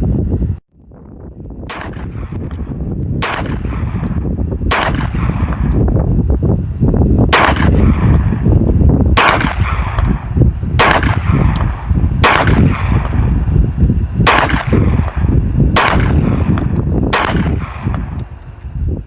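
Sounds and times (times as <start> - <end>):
low rumble: 0.0 - 19.0
pistol shots with echo: 1.6 - 5.8, 7.3 - 8.4, 9.1 - 13.4, 14.2 - 18.3.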